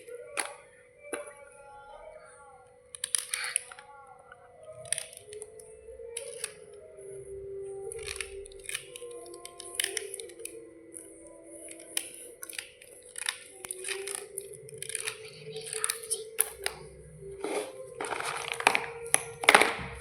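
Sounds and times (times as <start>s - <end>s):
slate crunching and scraping: 17.4s - 20.0s.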